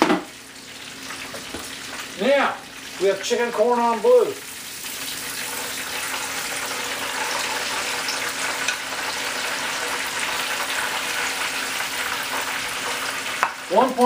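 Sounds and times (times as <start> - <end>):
food sizzling in hot oil: 0.0 - 14.0.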